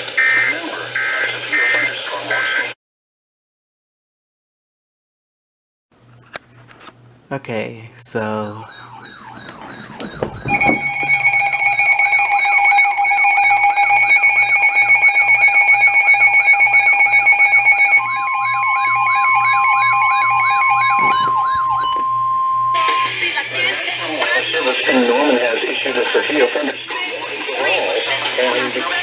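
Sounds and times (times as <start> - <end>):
steady weather radio alert tone: 8.2 - 23.3
steady beeping alarm tone: 8.4 - 23.3
warbling siren-like alarm: 8.4 - 23.3.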